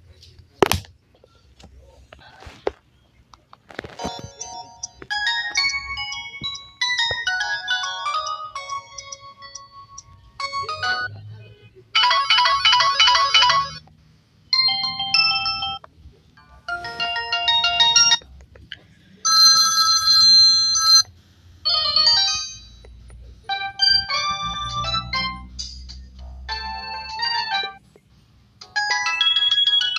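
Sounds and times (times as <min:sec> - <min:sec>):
mobile phone ringtones: 0:04.0 - 0:11.3, 0:19.3 - 0:21.1, 0:21.7 - 0:22.8, 0:28.7 - 0:29.9.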